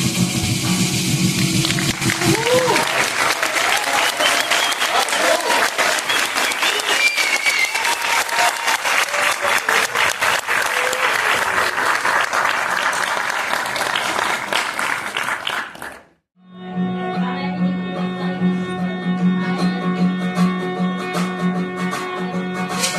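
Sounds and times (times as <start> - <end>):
audience applauding: 1.4 - 16.2
music with plucked strings: 16.4 - 22.9.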